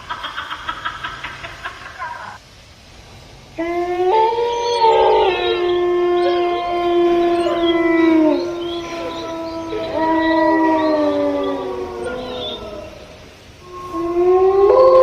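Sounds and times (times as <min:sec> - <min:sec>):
dogs howling: 0:03.6 - 0:15.0.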